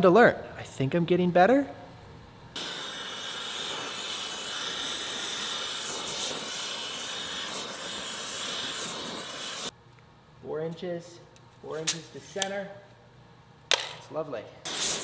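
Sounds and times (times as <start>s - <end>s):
steady hiss: 0.0s - 9.8s, 14.6s - 15.0s.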